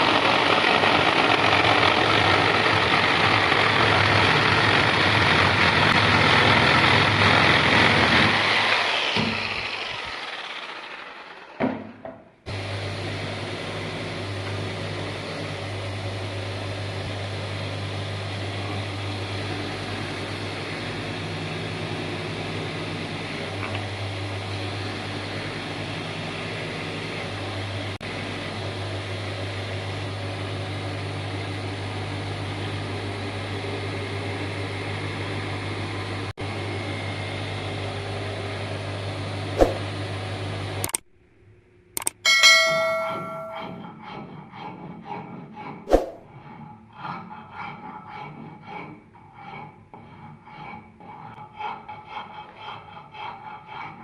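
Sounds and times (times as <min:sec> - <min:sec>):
electric motor hum: 0:00.0 - 0:11.6
machine rushing noise: 0:39.6 - 0:39.9, 0:45.9 - 0:46.2
sharp click: 0:40.8 - 0:41.1, 0:42.0 - 0:42.2.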